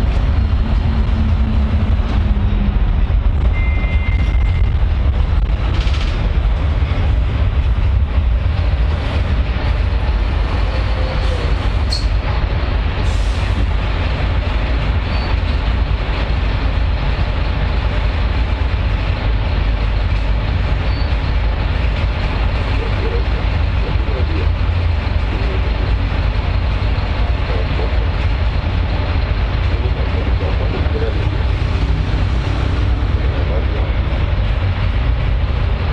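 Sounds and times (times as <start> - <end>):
train rumbling on rails: 0.0 - 35.9
rail clicks and squeaks: 3.4 - 4.6, 9.7 - 12.4, 14.6 - 15.9, 18.9 - 24.4.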